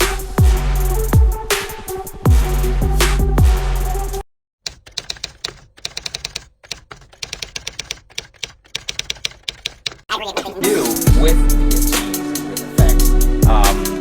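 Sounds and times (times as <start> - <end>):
music: 0.0 - 4.2, 10.2 - 14.0
rapid sharp clicks: 4.6 - 10.1.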